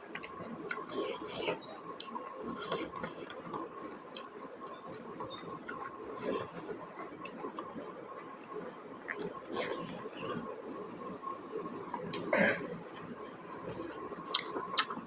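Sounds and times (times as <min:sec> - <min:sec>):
person chewing and smacking: 0:00.1 - 0:10.5, 0:11.9 - 0:12.3, 0:12.9 - 0:15.0
wet mouth clicks: 0:13.9 - 0:15.0.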